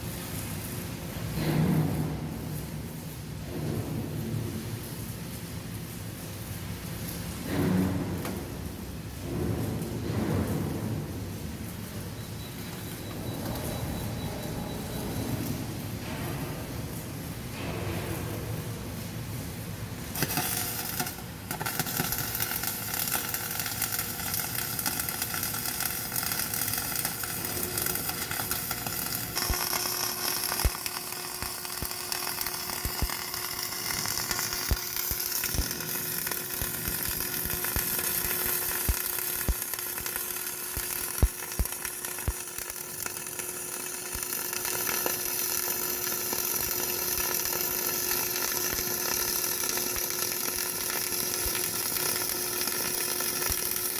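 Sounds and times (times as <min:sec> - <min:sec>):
welding arc sizzling: 0:00.0 - 0:53.9
sharp welding pops: 0:20.1 - 0:53.9.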